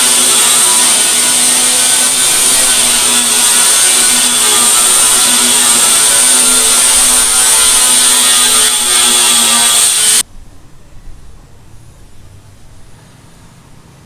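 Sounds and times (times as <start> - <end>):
power tool running: 0.0 - 10.2.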